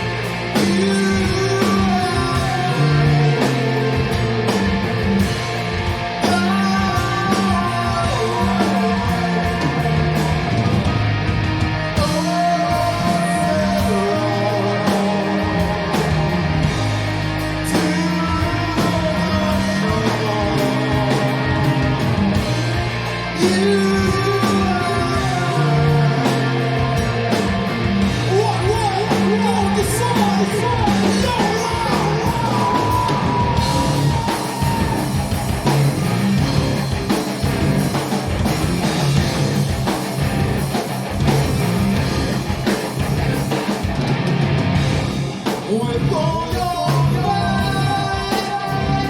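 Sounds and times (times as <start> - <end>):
bass and drums: 0.0 - 49.0
distorted electric guitars: 0.0 - 49.0
person singing: 0.5 - 5.5, 6.1 - 10.8, 11.8 - 27.4, 28.0 - 36.4, 45.4 - 49.0.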